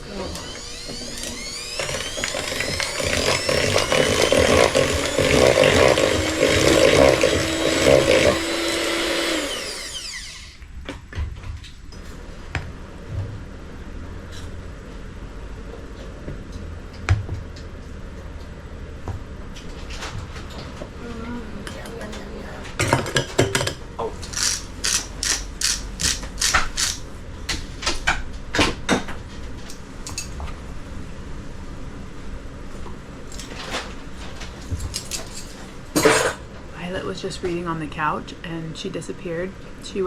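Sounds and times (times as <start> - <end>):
utensils clinking against bowl: 21.6 - 27.0, 34.8 - 36.4.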